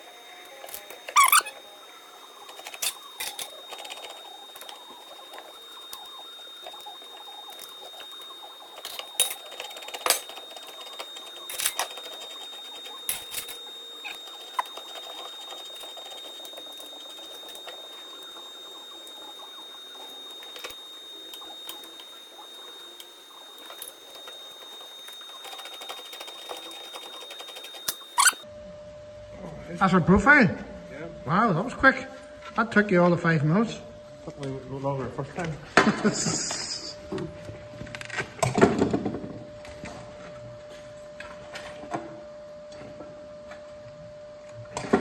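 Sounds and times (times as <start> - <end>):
light squeaks: 0.8 - 1.6.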